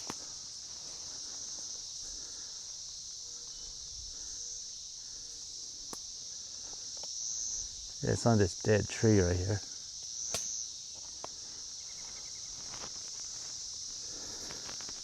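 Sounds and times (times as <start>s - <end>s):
insects chirping: 0.0s - 15.0s
sharp snap: 10.3s - 10.6s.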